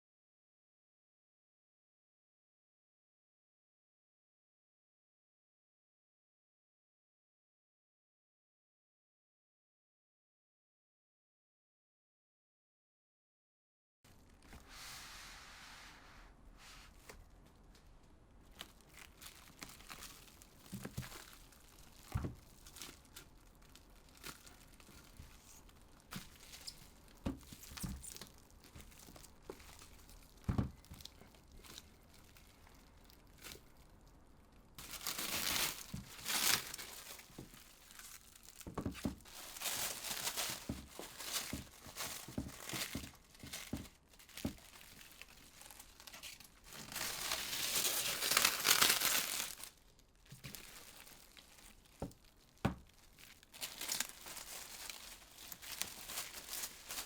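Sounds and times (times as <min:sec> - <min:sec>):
wrapping crinkling and tearing: 0:16.9 - 0:57.0.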